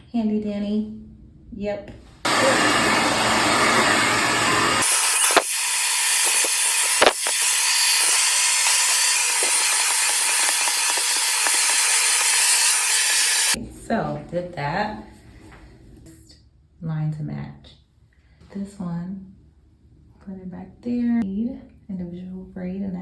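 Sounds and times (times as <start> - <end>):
hair dryer running: 2.3 - 13.6.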